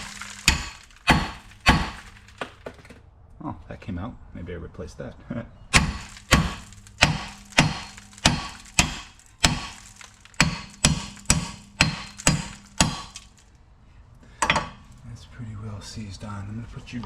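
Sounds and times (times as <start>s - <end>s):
hammer striking metal hub: 5.8s - 13.4s, 14.4s - 14.9s.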